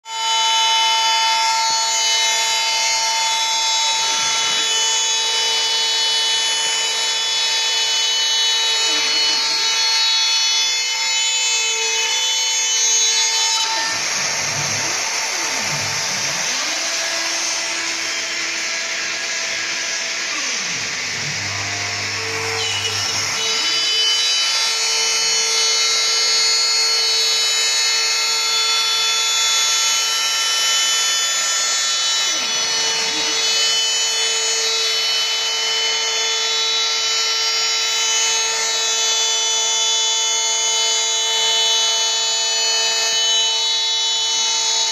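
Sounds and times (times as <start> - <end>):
cnc machine whining: 0.1 - 44.9.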